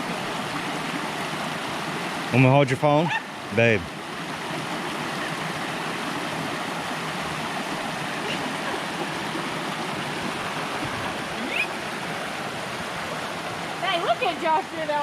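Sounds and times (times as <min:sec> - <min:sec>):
creek rushing over rocks: 0:00.0 - 0:15.0.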